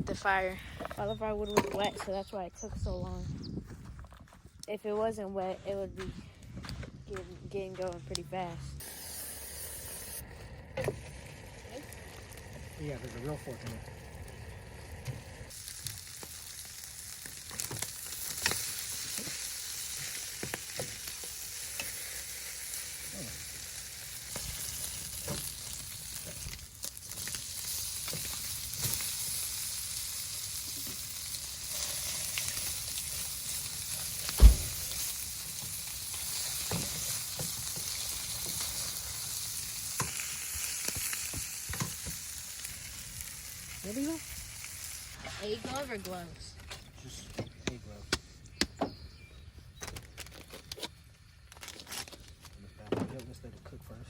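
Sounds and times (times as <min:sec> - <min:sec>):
food sizzling in a pan: 0:08.8 - 0:10.2, 0:10.8 - 0:45.9.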